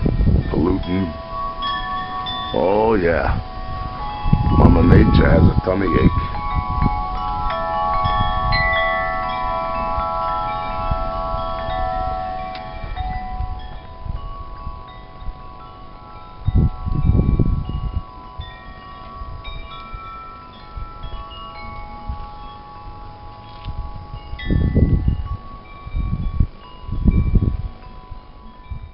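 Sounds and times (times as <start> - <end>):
wind chimes ringing: 0.0 - 28.9
wind rumbling on microphone: 0.0 - 28.9.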